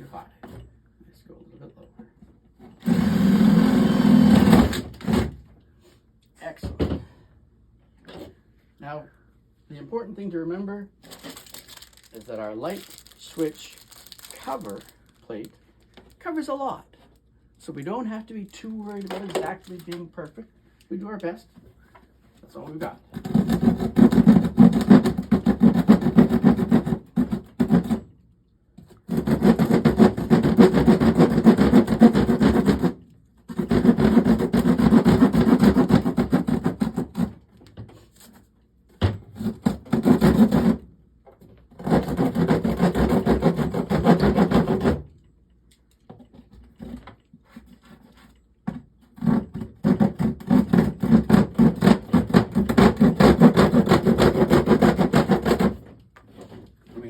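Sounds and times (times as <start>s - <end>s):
hand saw sawing through panel: 2.8s - 5.4s, 22.6s - 28.1s, 28.9s - 37.4s, 39.3s - 40.9s, 41.7s - 45.1s, 49.0s - 56.7s.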